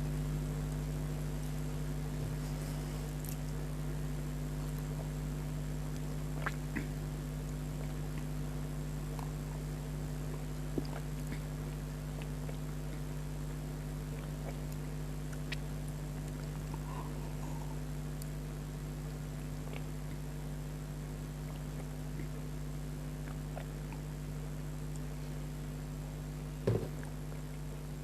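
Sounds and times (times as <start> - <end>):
steady low hum: 0.0 - 28.0
mouth clicks while eating: 10.3 - 13.1, 14.1 - 16.9, 19.6 - 20.3, 23.2 - 24.1.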